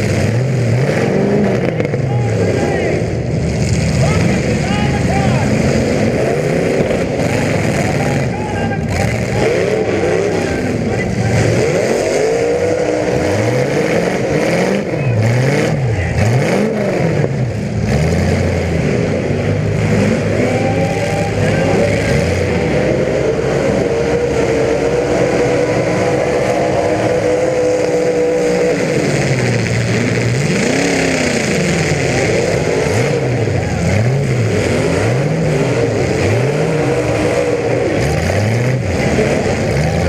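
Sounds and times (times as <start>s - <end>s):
car engines revving hard: 0.0s - 40.0s.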